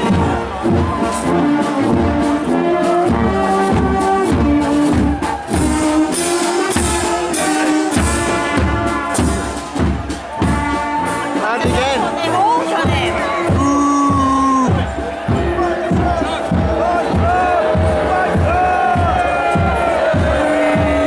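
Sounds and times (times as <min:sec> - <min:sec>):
brass band playing: 0:00.0 - 0:21.0
regular drum beat: 0:00.0 - 0:21.0.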